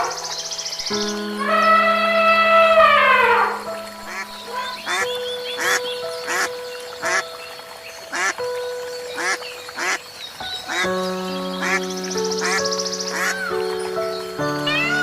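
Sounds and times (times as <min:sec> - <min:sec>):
music with long held notes: 0:00.0 - 0:15.0.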